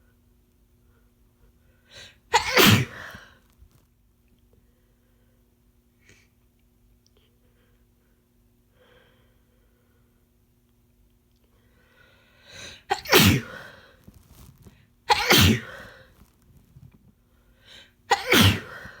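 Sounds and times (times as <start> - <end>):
person sneezing loudly: 2.3 - 3.4, 12.6 - 14.5, 15.1 - 16.1, 18.1 - 19.0.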